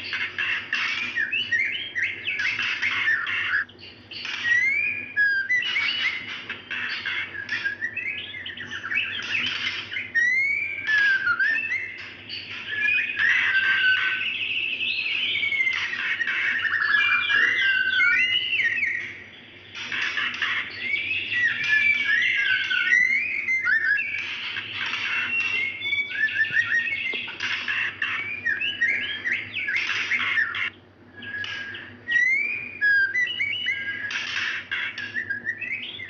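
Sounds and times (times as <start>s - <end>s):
bird whistling calls: 0.0s - 36.0s.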